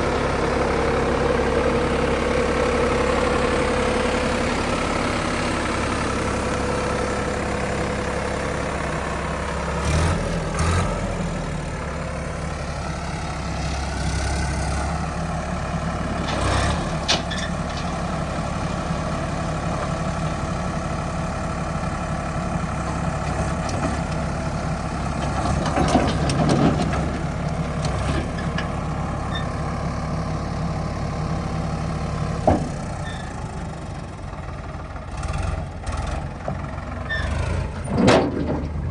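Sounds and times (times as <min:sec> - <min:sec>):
diesel engine running: 0:00.0 - 0:38.9
metal clunks and knocks: 0:16.1 - 0:18.5, 0:25.2 - 0:28.8, 0:37.8 - 0:38.9.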